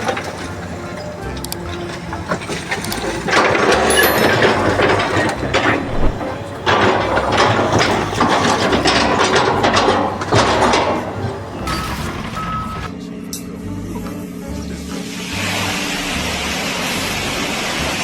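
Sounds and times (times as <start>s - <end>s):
loud mechanical rattling and clicking: 0.0s - 12.9s.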